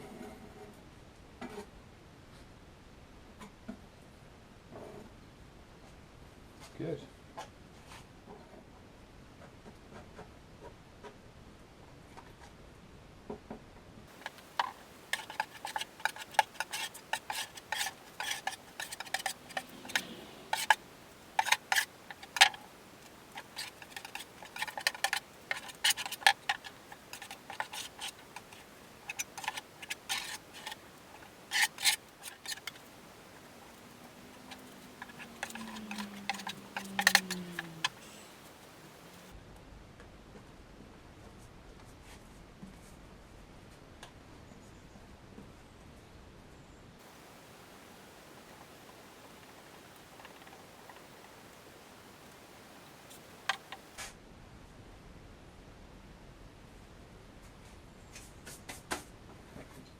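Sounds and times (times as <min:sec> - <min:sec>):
taps and clicks on fibreglass: 0:14.1 - 0:39.3.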